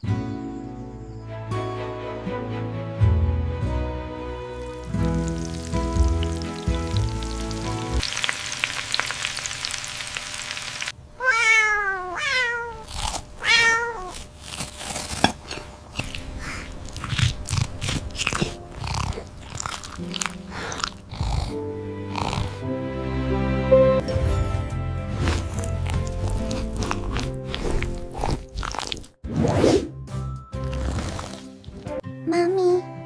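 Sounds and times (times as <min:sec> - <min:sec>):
music: 0:00.0 - 0:08.0, 0:18.2 - 0:28.6, 0:29.7 - 0:33.0
cat meowing: 0:11.2 - 0:14.2.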